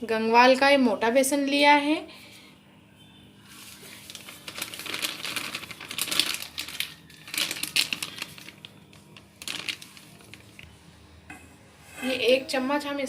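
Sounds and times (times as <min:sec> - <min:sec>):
plastic packet crinkling: 0:03.8 - 0:10.6.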